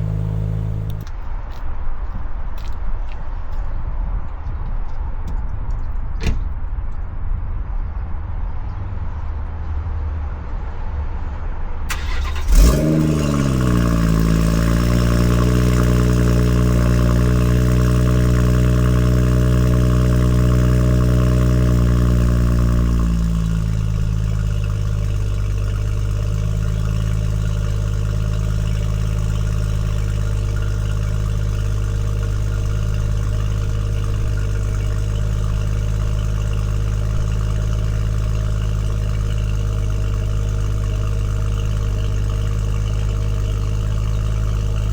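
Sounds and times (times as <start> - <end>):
car engine starting and idling: 0.0 - 1.2, 11.9 - 44.9.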